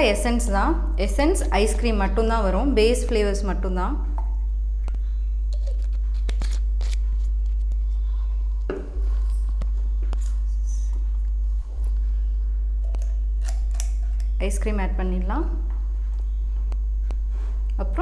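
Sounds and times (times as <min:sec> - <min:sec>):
electrical mains hum: 0:00.0 - 0:18.0.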